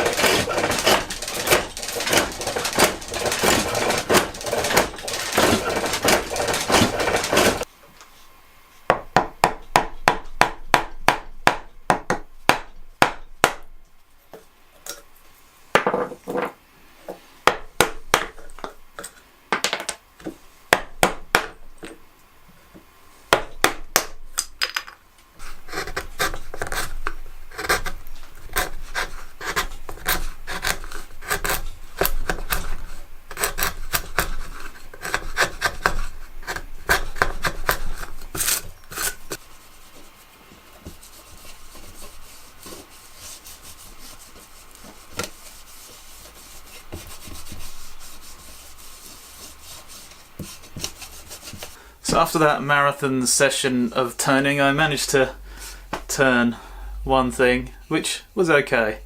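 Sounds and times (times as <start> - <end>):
turning tool scraping spinning wood: 0.0 - 7.7, 25.4 - 52.4.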